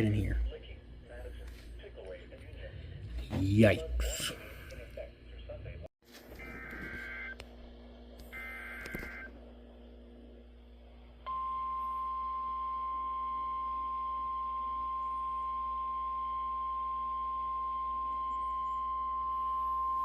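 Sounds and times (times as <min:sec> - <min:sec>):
steady warning alarm tone: 0:06.4 - 0:07.4, 0:08.3 - 0:09.4, 0:11.3 - 0:20.0.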